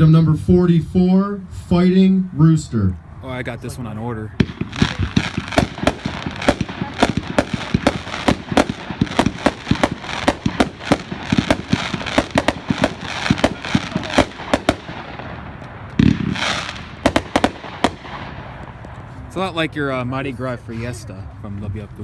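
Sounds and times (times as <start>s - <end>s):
firework shots and breaks: 4.4s - 19.1s
firework crackling: 4.4s - 19.6s.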